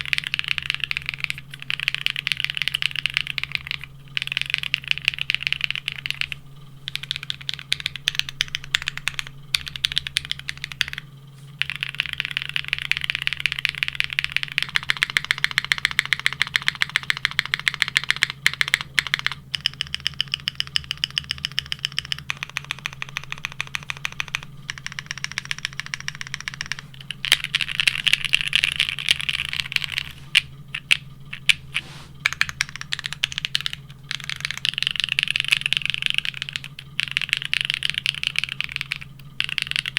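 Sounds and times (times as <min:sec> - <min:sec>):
mechanical keyboard typing: 0:00.0 - 0:39.9
steady low hum: 0:00.0 - 0:39.9.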